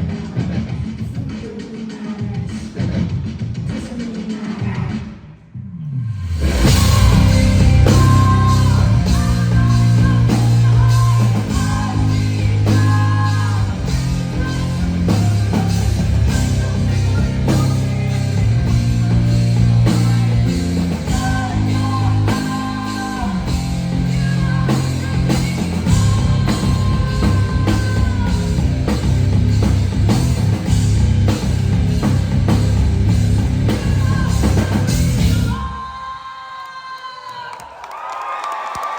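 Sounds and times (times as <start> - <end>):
sung vocals: 0.0 - 37.8
rock band playing live: 6.3 - 35.7.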